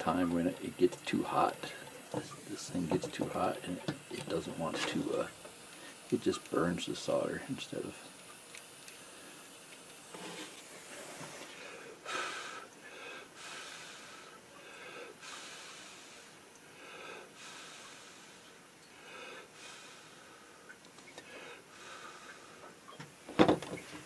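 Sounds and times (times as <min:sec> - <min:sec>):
person breathing: 0:05.7 - 0:06.1, 0:11.4 - 0:22.7.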